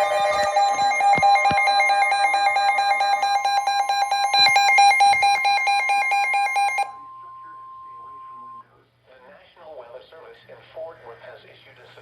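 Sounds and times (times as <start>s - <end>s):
warbling electronic alarm beeps: 0.0s - 8.6s.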